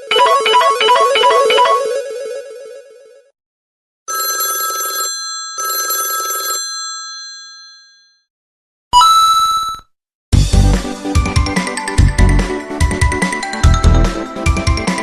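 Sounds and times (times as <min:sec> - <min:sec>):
telephone bell ringtone: 0:00.0 - 0:02.3, 0:04.1 - 0:08.3
musical ringtone: 0:00.0 - 0:02.8.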